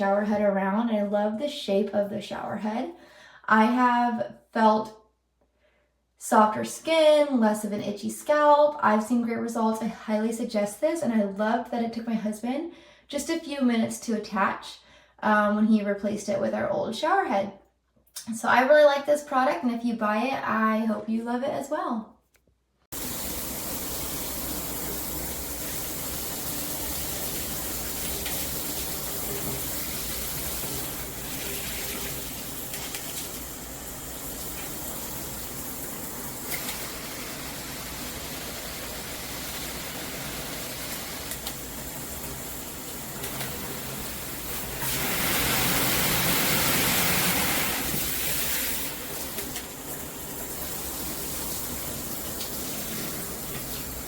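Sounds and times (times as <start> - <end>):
shower head spraying water: 22.9 - 54.0.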